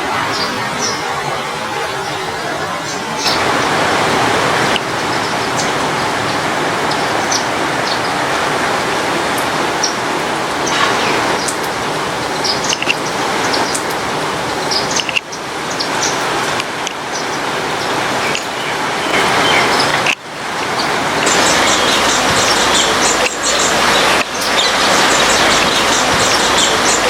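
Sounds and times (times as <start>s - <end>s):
steady rain hiss: 0.0s - 27.0s
bird chirps: 20.8s - 27.0s.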